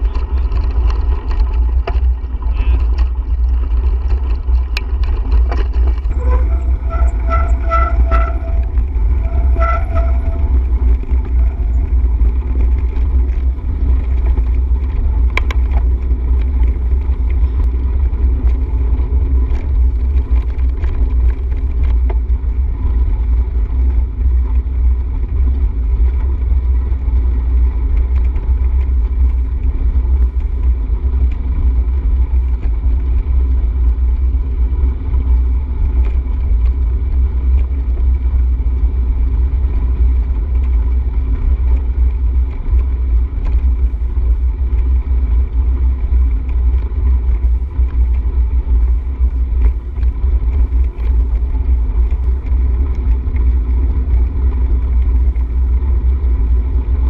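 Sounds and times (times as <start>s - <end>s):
wind buffeting microphone: 0.0s - 57.0s.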